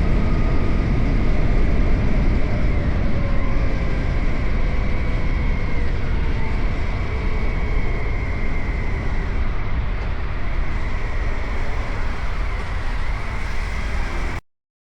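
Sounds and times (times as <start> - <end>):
motorcycle engine cruising: 0.0 - 14.4
wind and road noise: 0.0 - 14.4.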